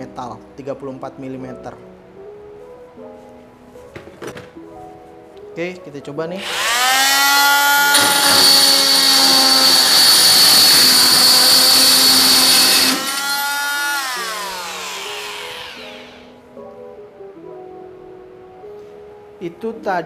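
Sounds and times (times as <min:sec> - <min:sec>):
multi-tool motor whine: 0:06.4 - 0:16.3.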